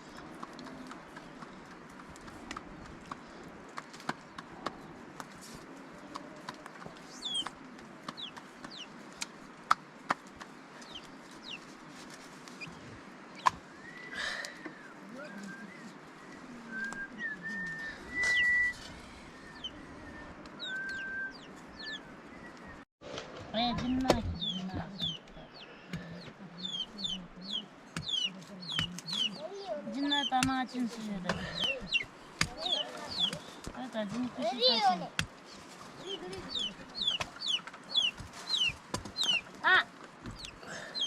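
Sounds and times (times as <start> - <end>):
chickens clucking: 0.0 - 13.6, 23.8 - 41.0
small birds chirping: 0.0 - 22.9, 23.6 - 41.0.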